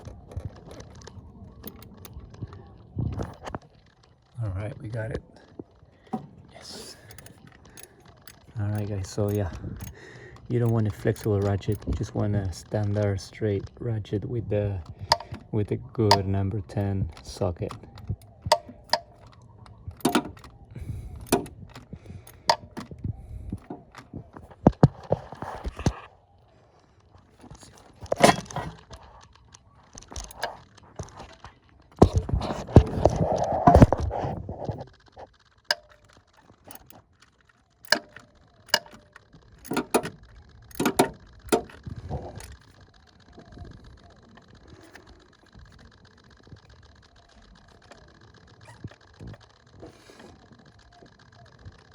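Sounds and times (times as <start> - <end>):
scraping rattle: 0.0 - 26.1, 26.9 - 51.9
faint low hum: 0.0 - 51.9
hand tools clicking on metal: 0.6 - 2.5, 6.0 - 13.5, 14.6 - 26.0, 27.4 - 34.1, 35.7 - 51.9
hand tools clinking on metal: 6.1 - 12.2, 14.9 - 22.9, 27.4 - 28.8, 35.7 - 37.0, 37.8 - 42.6.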